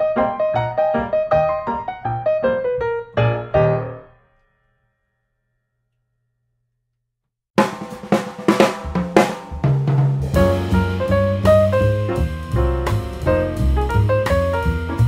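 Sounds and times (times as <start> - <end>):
piano phrase: 0.0 - 4.4, 10.2 - 15.0
music with drum kit: 7.6 - 15.0.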